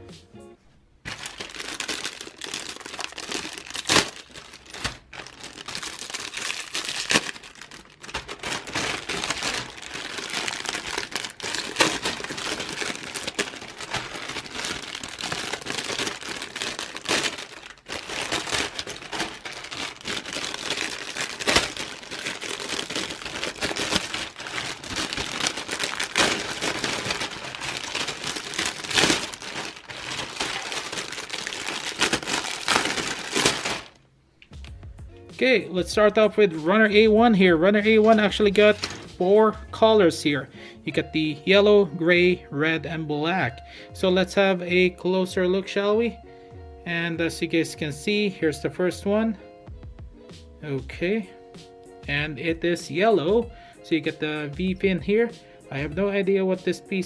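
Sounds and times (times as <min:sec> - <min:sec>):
plastic bags crinkling: 0:01.1 - 0:34.5, 0:37.7 - 0:39.2.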